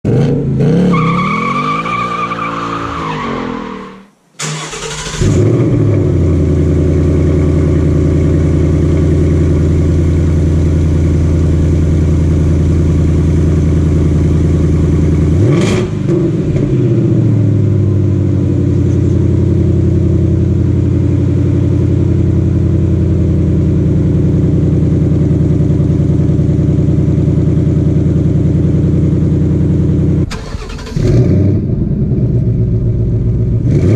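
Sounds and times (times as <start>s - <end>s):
car engine starting and idling: 4.2s - 33.9s.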